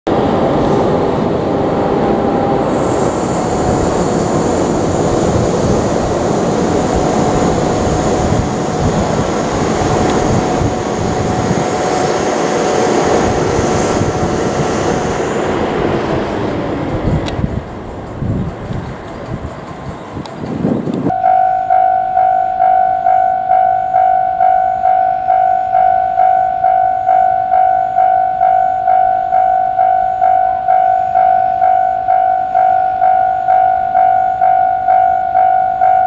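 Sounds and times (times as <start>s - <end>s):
train wheels rumbling on rail: 0.1s - 36.0s
faint high-pitched ring: 21.1s - 36.0s.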